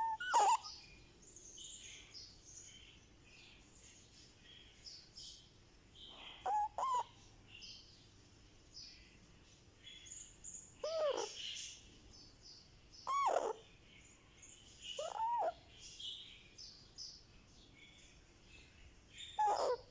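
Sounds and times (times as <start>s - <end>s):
parakeet short calls: 0.0s - 0.7s, 6.3s - 7.1s, 10.8s - 11.4s, 13.1s - 13.6s, 15.0s - 15.6s, 19.4s - 19.9s
parakeet chirping and chattering: 0.0s - 1.0s, 6.0s - 7.3s, 10.0s - 11.9s, 13.0s - 16.2s, 18.0s - 19.9s.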